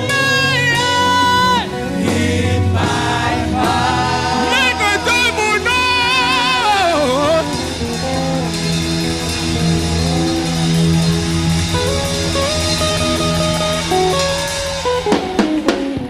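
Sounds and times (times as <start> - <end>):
person singing: 0.0 - 8.2
guitar: 0.0 - 16.0
steady bass: 0.0 - 16.0.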